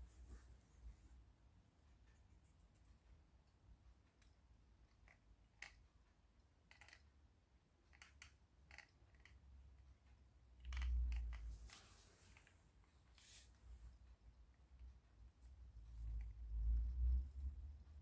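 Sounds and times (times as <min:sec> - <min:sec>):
small handling clicks: 0:06.6 - 0:07.1, 0:07.9 - 0:09.4.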